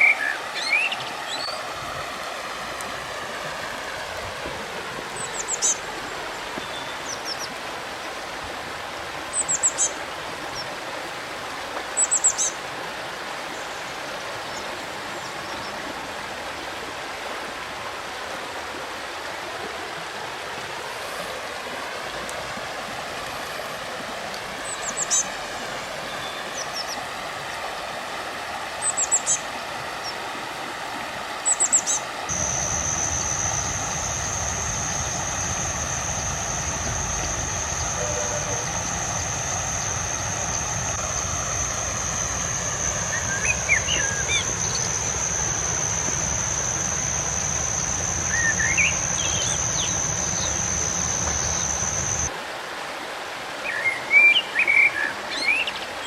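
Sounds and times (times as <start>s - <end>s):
river water flowing: 0.0s - 56.0s
small birds chirping: 31.5s - 52.3s
high-pitched whine: 32.3s - 52.3s.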